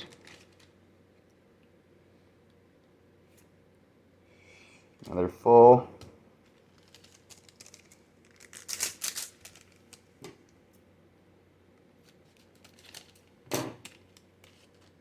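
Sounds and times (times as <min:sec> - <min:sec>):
card wrappers rustling: 0:00.0 - 0:00.7, 0:06.5 - 0:10.2, 0:12.0 - 0:15.0.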